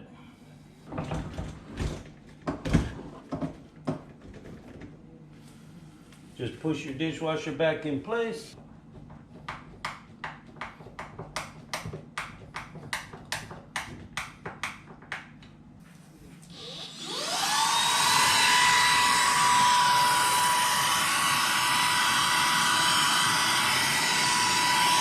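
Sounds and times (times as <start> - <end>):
vacuum cleaner motor whining: 16.5 - 25.0.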